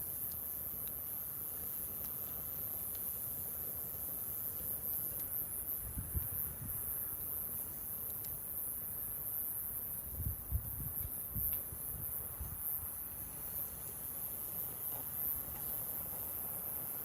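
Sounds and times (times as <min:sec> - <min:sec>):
insects chirring: 0:00.0 - 0:17.0
campfire crackling: 0:00.1 - 0:05.6.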